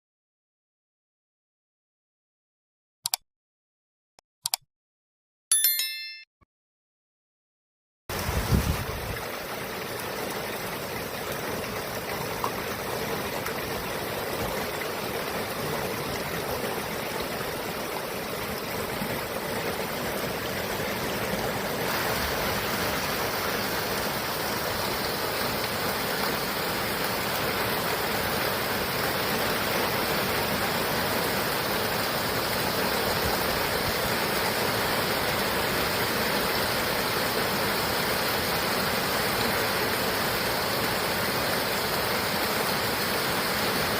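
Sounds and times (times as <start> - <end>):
heavy rain pouring: 12.7 - 38.2.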